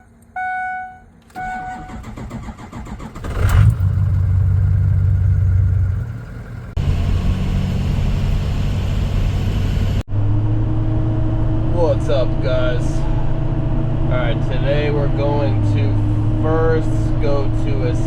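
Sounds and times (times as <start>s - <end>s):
short beeps: 0.0s - 2.0s
engine cranking and running: 1.2s - 10.0s.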